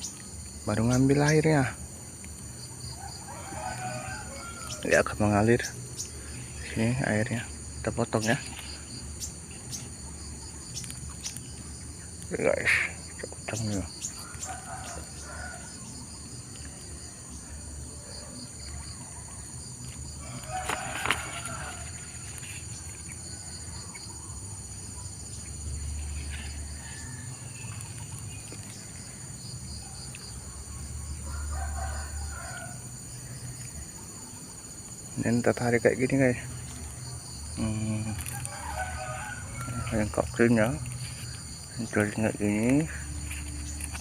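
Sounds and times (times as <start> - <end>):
high drone of insects: 0.0 - 44.0
rooster crowing: 2.8 - 5.2, 14.2 - 16.0, 16.8 - 22.6, 26.3 - 27.7, 31.0 - 33.2, 38.2 - 41.5.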